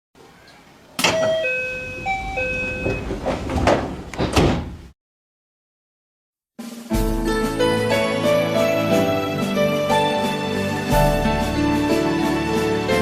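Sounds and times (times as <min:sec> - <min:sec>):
electronic announcement chime: 0:01.0 - 0:03.2
train running and rattling: 0:01.0 - 0:04.9.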